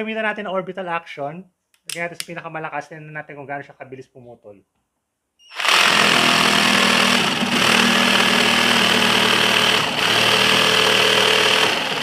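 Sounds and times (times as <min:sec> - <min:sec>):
jigsaw cutting plywood: 0:05.5 - 0:12.0.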